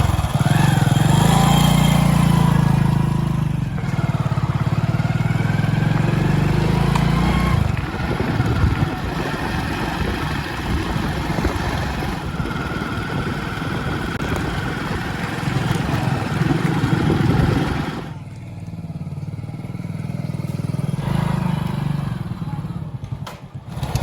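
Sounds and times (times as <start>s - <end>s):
diesel engine rattling: 0.0s - 24.0s.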